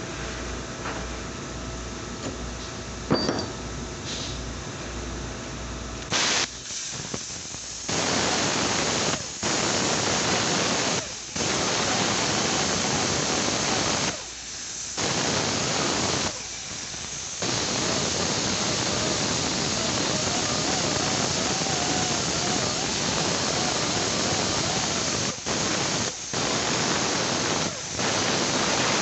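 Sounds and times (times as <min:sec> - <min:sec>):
loud hissing jet: 0:06.1 - 0:29.0.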